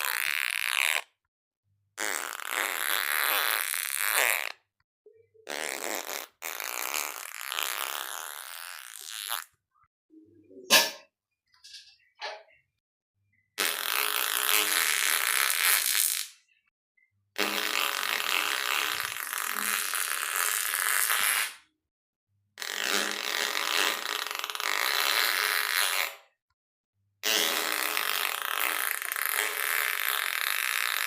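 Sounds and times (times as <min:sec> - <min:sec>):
raspy fart sound effects: 0:00.0 - 0:01.2, 0:02.0 - 0:04.7, 0:05.4 - 0:09.6, 0:13.6 - 0:16.4, 0:17.4 - 0:21.7, 0:22.6 - 0:26.3, 0:27.2 - 0:31.0.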